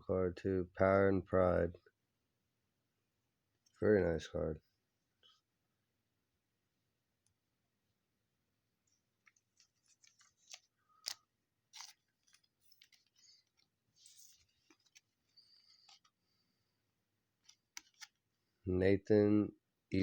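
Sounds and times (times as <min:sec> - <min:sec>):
trading cards being shuffled: 0:09.2 - 0:16.2, 0:17.4 - 0:18.2.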